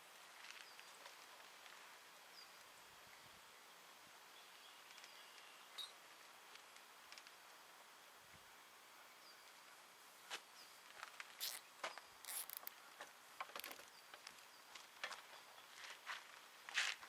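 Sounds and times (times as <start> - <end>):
zip ties ratcheting: 11.4 - 12.7.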